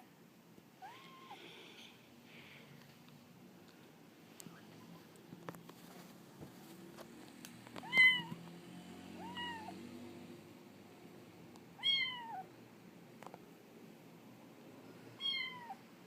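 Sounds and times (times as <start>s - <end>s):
cat meowing: 0.8s - 1.4s, 7.8s - 8.4s, 9.2s - 9.8s, 11.8s - 12.5s, 15.2s - 15.8s.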